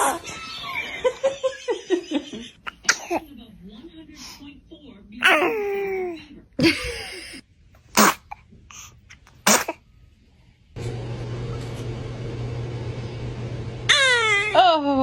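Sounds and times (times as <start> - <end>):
babies sneezing: 2.7 - 3.2, 7.9 - 8.4, 9.4 - 9.8
baby crying: 5.2 - 6.2, 13.9 - 14.8.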